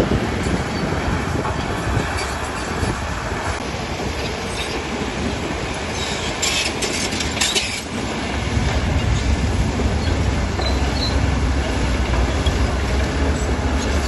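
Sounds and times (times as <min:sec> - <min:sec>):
bulldozer diesel rumble: 0:00.0 - 0:14.0
crawler tracks clanking and squealing: 0:00.4 - 0:14.0.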